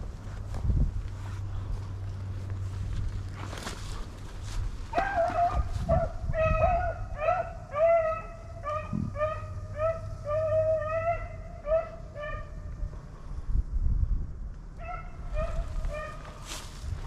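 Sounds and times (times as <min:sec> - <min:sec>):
hounds baying: 0:04.9 - 0:13.0, 0:14.8 - 0:16.5.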